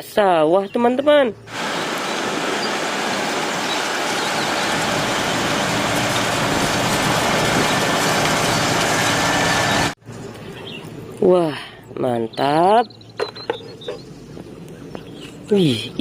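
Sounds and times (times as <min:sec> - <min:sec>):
water jet rushing hiss: 0:01.5 - 0:10.0.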